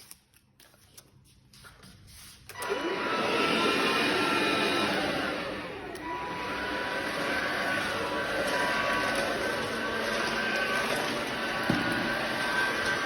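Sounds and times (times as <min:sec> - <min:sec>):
vacuum cleaner motor whining hum: 0:02.5 - 0:13.0.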